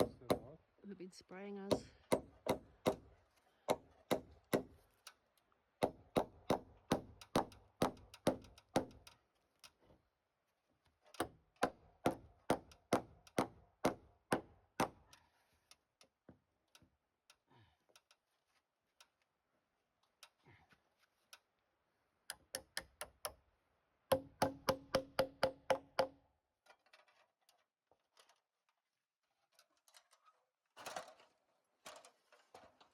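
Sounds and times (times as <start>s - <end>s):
hammer driving nails into timber: 0.0s - 0.5s, 1.7s - 5.1s, 5.8s - 9.2s, 11.2s - 15.1s, 22.3s - 23.4s, 24.1s - 26.2s.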